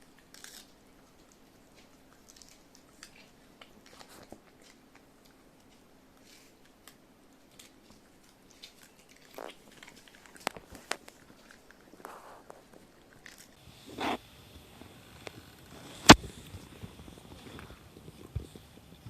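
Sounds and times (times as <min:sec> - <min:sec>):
dog chewing pepper: 0:00.0 - 0:14.2.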